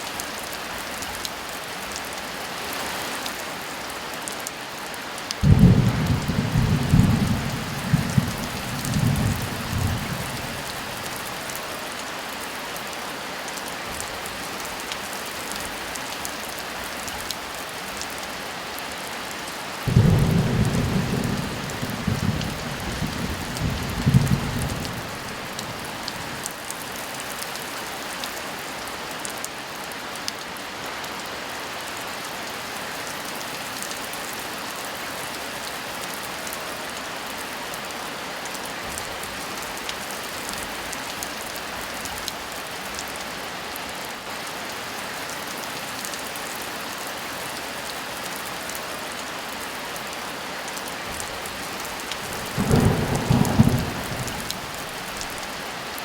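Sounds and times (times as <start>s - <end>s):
heavy rain: 0.0s - 56.0s
low rumble of thunder: 5.4s - 11.1s, 19.9s - 26.4s, 52.2s - 55.7s.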